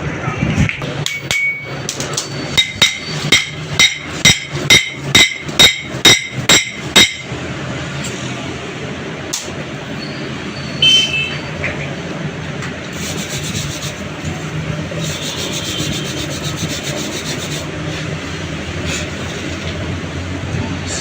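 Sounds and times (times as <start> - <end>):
hammer striking metal: 1.0 - 7.4
ringing metallic clink: 1.1 - 7.3.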